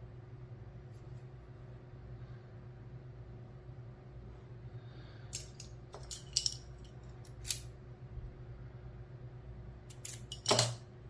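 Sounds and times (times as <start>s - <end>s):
metallic lock parts clicking: 5.3s - 7.7s, 9.9s - 10.8s.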